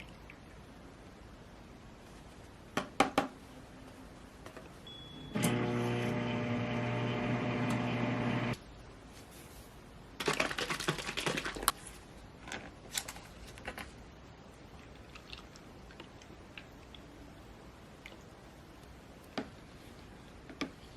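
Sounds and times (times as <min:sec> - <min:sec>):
microwave oven humming: 0:04.9 - 0:08.6.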